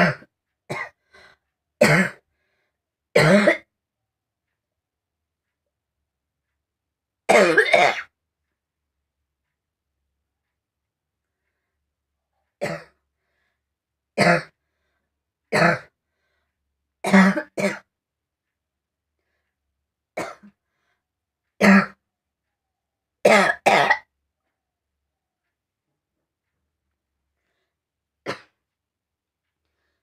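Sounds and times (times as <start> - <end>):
person coughing: 0.0 - 1.0, 1.8 - 2.2, 3.2 - 3.7, 7.3 - 8.1, 12.6 - 13.0, 14.2 - 14.6, 15.6 - 15.9, 17.0 - 17.9, 20.2 - 20.6, 21.6 - 22.0, 23.3 - 24.1, 28.3 - 28.6.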